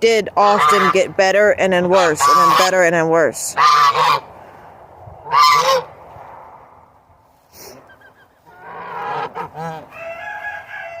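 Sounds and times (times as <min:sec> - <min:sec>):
goose honking: 0:00.4 - 0:01.1, 0:01.8 - 0:04.3, 0:05.2 - 0:05.9, 0:08.0 - 0:11.0.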